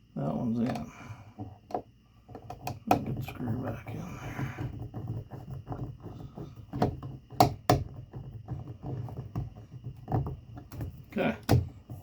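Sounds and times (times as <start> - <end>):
screwdriver clicking and tapping: 1.4 - 3.2, 4.6 - 12.0.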